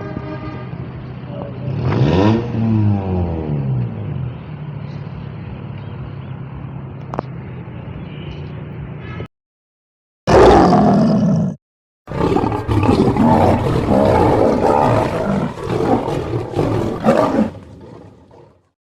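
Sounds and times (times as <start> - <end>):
lion roaring: 10.3 - 18.7.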